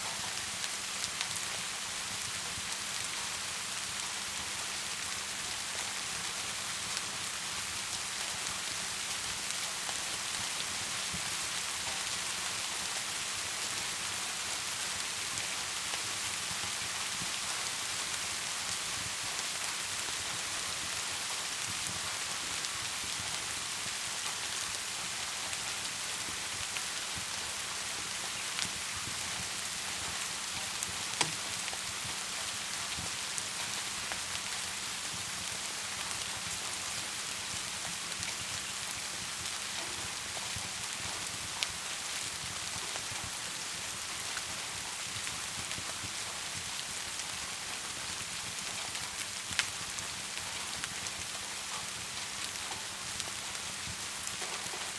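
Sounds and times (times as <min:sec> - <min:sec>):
steady rain hiss: 0:00.0 - 0:54.9
wood fire crackling: 0:00.1 - 0:54.9.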